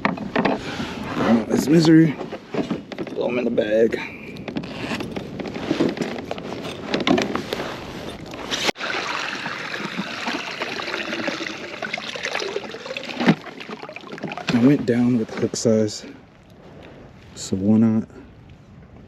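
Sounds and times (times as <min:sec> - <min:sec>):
water trickling and splashing: 0:08.7 - 0:15.7.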